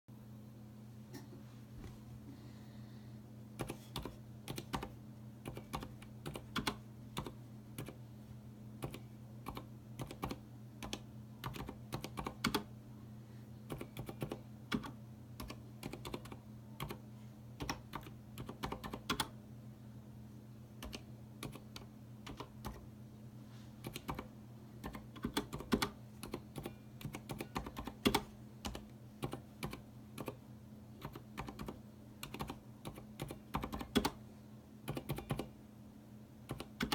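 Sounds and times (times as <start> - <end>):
steady low hum: 0.1 - 36.9
mechanical keyboard typing: 3.6 - 8.0, 8.8 - 12.7, 13.7 - 17.0, 17.6 - 19.4, 20.8 - 22.8, 23.8 - 30.4, 31.0 - 34.2, 34.9 - 35.5, 36.5 - 36.9.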